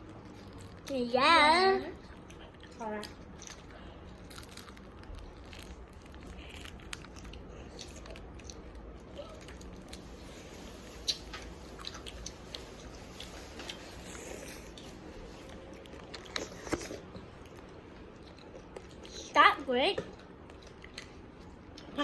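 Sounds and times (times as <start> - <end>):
candy shell crunching while chewing: 2.1 - 10.1.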